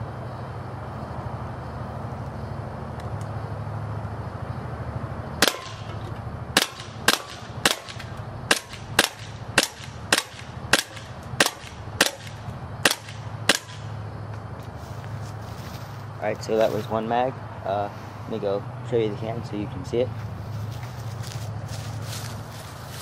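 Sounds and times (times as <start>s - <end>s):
low background hum: 0.0s - 23.0s
airsoft pistol shots: 5.4s - 6.0s, 6.6s - 13.9s.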